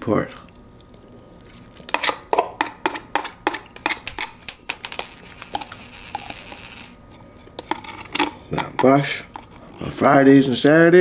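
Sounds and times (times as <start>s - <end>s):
high metallic ringing: 4.1s - 7.0s.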